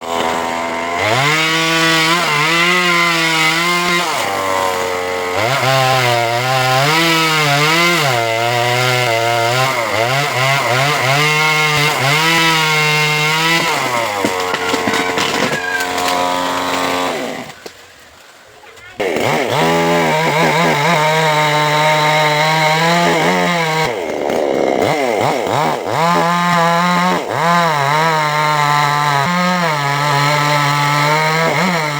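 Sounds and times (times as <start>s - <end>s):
chainsaw cutting wood: 0.0s - 31.9s.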